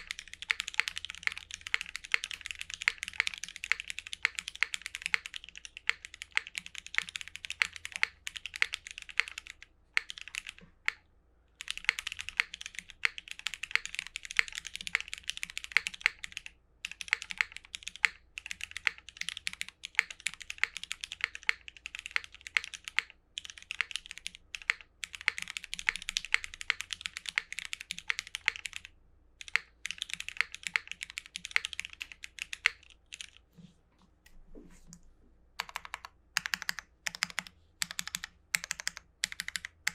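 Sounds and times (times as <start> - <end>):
mechanical keyboard typing: 0.0 - 11.0, 11.6 - 33.4, 35.6 - 39.9.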